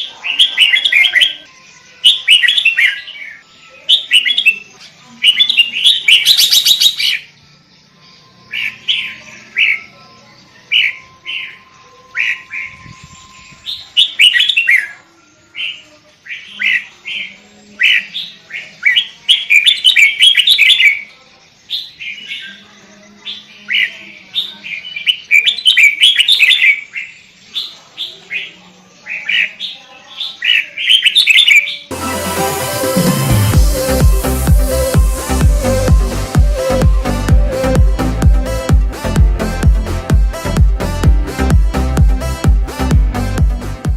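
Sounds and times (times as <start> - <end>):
bird singing whistled notes: 0.0 - 7.4, 8.2 - 31.9
music: 0.0 - 16.4, 31.9 - 43.9.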